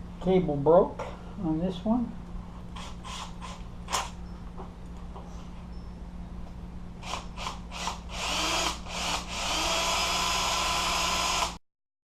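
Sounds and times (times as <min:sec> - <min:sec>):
power drill whining: 0:07.0 - 0:11.6.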